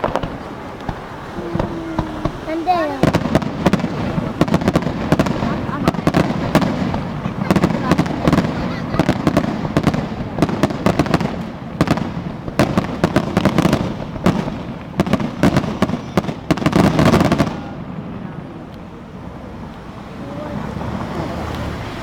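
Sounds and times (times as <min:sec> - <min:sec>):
fireworks bursting: 0:00.0 - 0:22.0.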